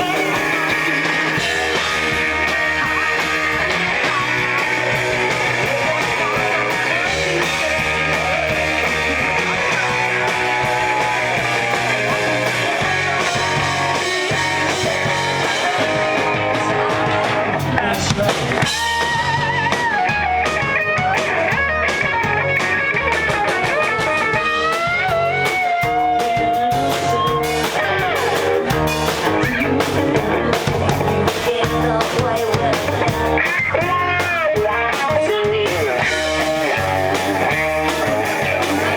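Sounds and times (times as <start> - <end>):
rock band playing live: 0.0 - 38.9.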